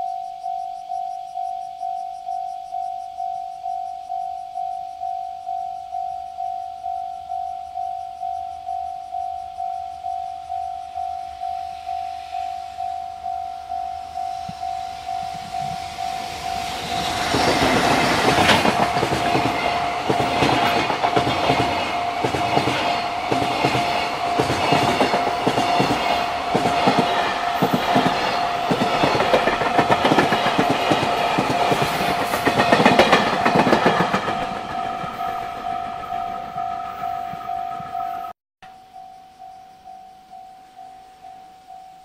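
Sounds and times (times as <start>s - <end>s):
level crossing warning bell: 0.0s - 42.0s
train wheels clattering over rails: 15.0s - 36.2s.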